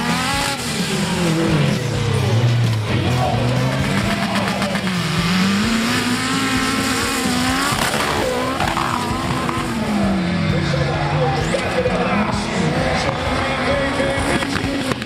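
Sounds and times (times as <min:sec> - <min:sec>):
jeep engine revving hard: 0:00.0 - 0:10.3.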